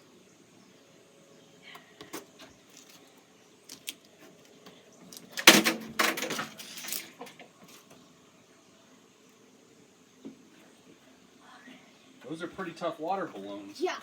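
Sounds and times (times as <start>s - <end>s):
water balloon hitting washing machine drum: 5.4s - 6.4s.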